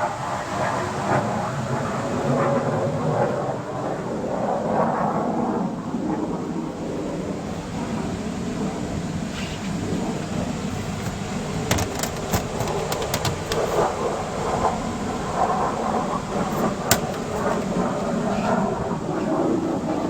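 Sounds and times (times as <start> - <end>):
vehicle engine rumbling: 10.4 - 13.9, 16.3 - 17.8
sharp clicks and rattles: 10.8 - 13.9, 16.4 - 17.7.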